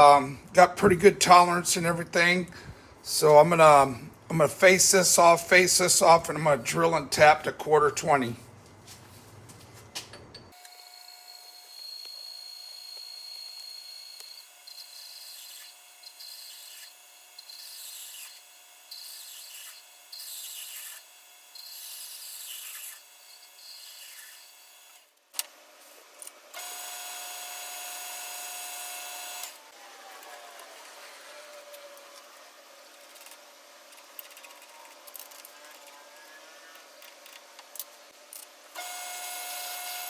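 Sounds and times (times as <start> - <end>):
cutting tool scraping metal: 14.2 - 24.5
lathe whine: 26.5 - 37.4, 38.7 - 40.0.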